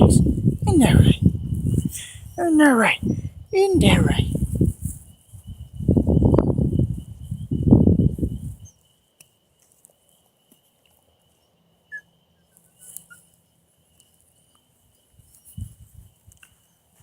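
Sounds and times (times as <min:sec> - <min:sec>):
bird chirping: 0:11.3 - 0:13.6.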